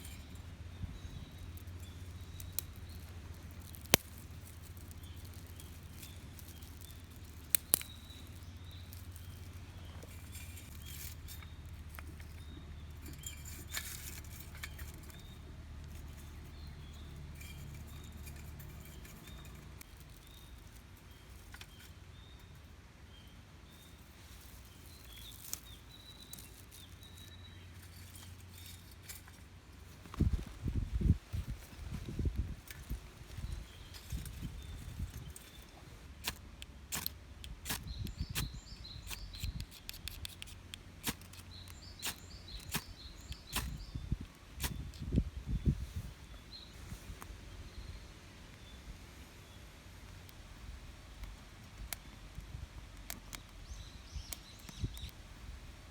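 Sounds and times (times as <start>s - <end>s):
wood fire crackling: 0.0s - 22.6s, 23.7s - 45.2s, 49.9s - 55.9s
fire pops: 1.5s - 12.2s, 29.9s - 45.2s.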